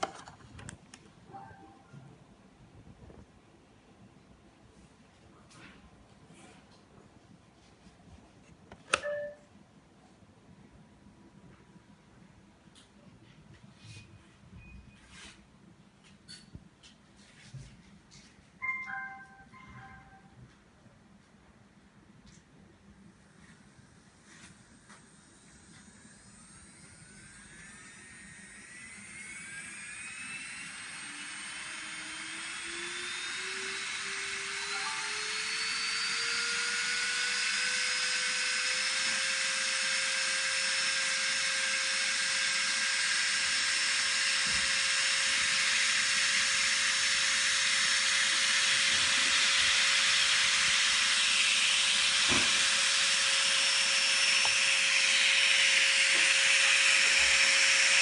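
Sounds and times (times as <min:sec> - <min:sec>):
nail drill motor whine: 0:25.0 - 0:58.0.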